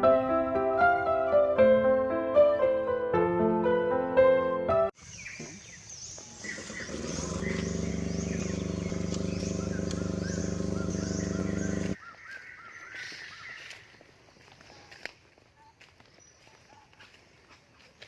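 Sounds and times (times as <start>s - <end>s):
piano music: 0.0s - 5.0s
birds chirping: 5.0s - 15.0s
low engine hum: 6.2s - 12.0s.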